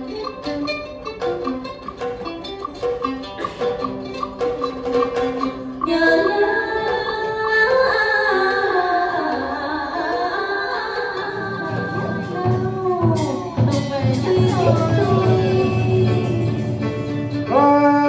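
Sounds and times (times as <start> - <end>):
plucked string instrument: 0.0 - 18.0
person singing: 5.8 - 18.0.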